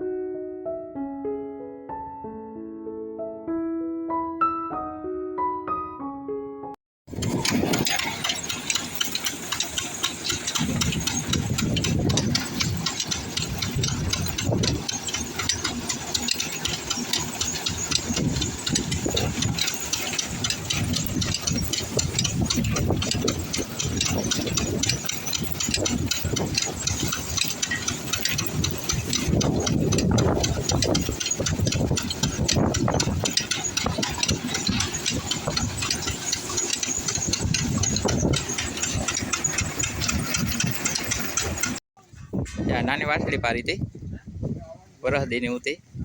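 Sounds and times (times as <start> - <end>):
engine running steadily: 7.1 - 41.8
rattling mechanical clatter: 7.1 - 43.8.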